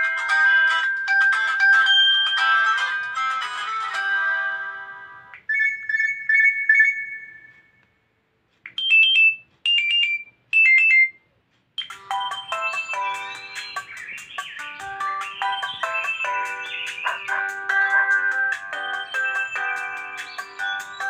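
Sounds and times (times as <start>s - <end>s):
chiming alarm melody: 0.0s - 7.8s, 11.8s - 21.0s
two-note twinkle: 11.8s - 14.0s, 14.6s - 21.0s.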